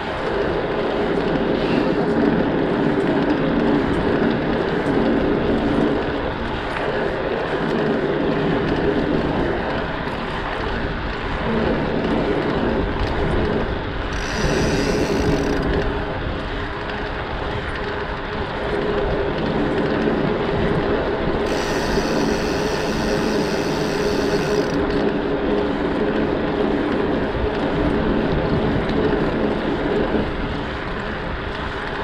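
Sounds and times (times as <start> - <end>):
bike rolling and wind noise: 0.0 - 32.0
bike freewheel ticking: 14.1 - 16.0, 21.4 - 26.3.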